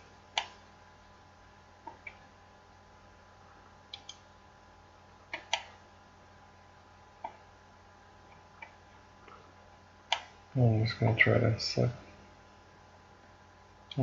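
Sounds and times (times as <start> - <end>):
faint steady hum: 0.0 - 14.0
computer mouse buttons clicking: 3.9 - 4.2, 5.3 - 5.8, 10.1 - 10.3.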